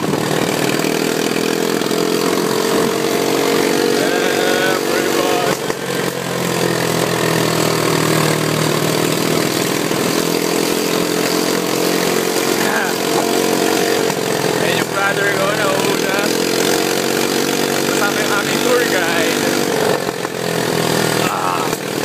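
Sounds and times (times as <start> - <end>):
atv engine running: 0.0 - 22.0.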